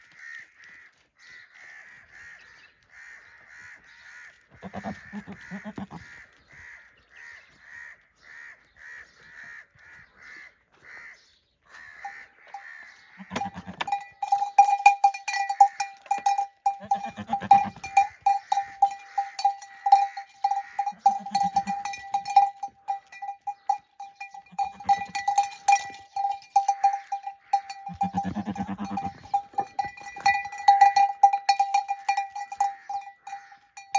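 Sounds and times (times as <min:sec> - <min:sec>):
goats bleating: 0:00.0 - 0:33.9
bell clanking rapidly: 0:13.4 - 0:33.9.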